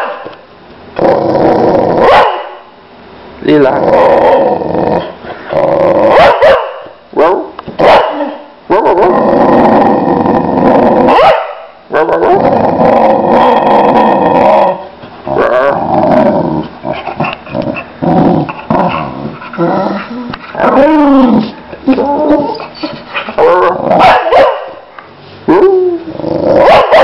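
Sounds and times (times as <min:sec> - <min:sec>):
dog barking: 0:00.0 - 0:00.3, 0:02.0 - 0:02.6, 0:06.1 - 0:09.0, 0:11.1 - 0:12.3, 0:23.5 - 0:24.8, 0:26.6 - 0:27.0
dog growling: 0:01.0 - 0:02.1, 0:03.6 - 0:06.3, 0:08.2 - 0:11.2, 0:12.0 - 0:24.3, 0:25.5 - 0:27.0.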